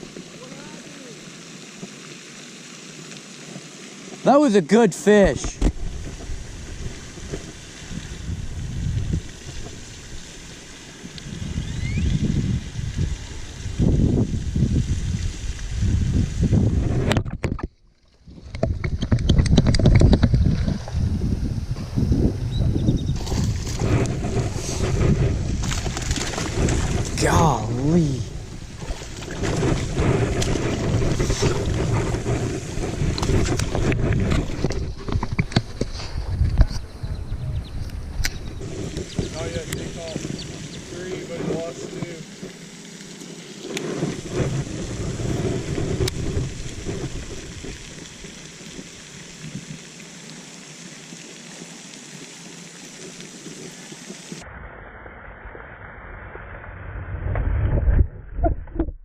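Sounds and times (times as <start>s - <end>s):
outdoor hiss: 0.0s - 16.7s, 37.7s - 54.4s
wind gusting against microphone: 5.2s - 17.6s, 18.3s - 42.4s, 43.9s - 48.0s
faint high chirp: 11.6s - 12.2s.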